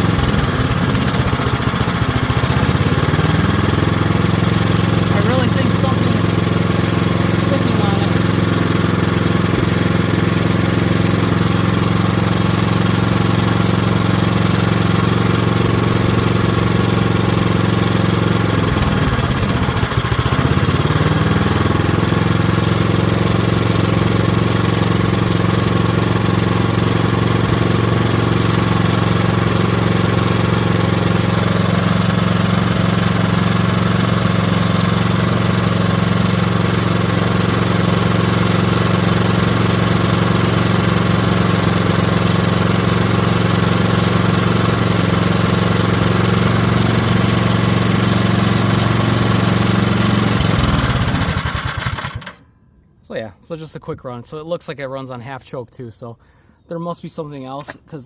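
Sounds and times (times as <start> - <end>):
snowblower engine running: 0.0 - 52.5.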